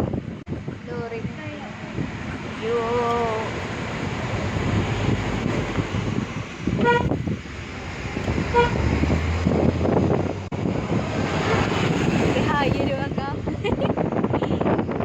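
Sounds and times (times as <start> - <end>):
road and engine noise: 0.0 - 15.0
vehicle horn toots: 6.8 - 7.2, 8.5 - 8.9.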